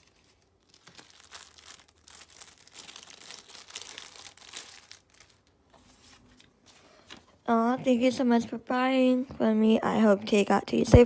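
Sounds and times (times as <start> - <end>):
packaging crinkling and tearing: 0.0 - 5.6.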